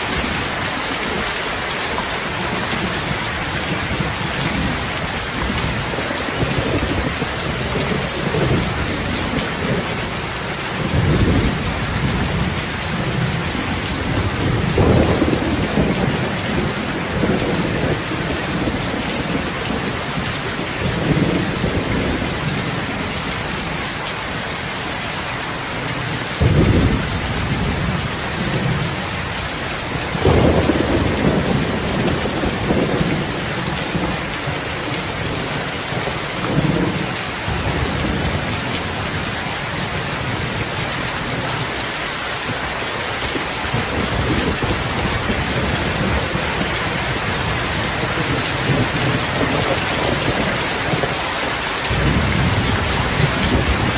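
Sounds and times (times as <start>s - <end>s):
heavy rain: 0.0s - 53.9s
thunder rumbling: 2.0s - 23.8s, 25.8s - 41.8s, 43.6s - 51.2s, 51.9s - 53.9s.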